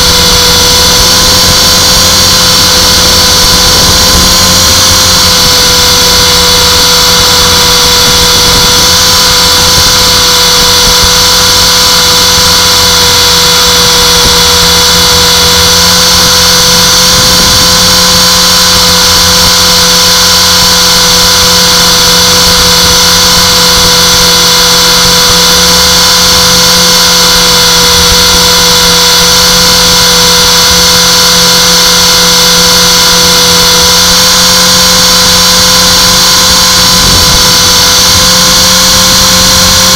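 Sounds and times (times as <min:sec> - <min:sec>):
rc helicopter high whine: 0:00.0 - 0:39.9.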